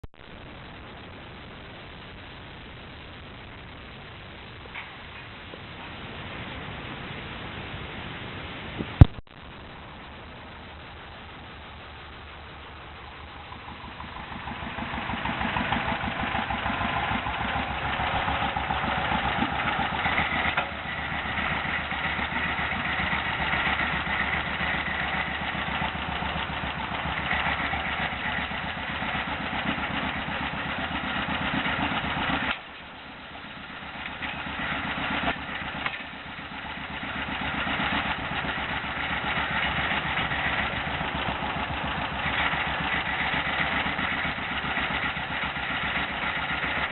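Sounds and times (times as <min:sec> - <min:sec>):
engine starting and running: 0:11.0 - 0:46.9.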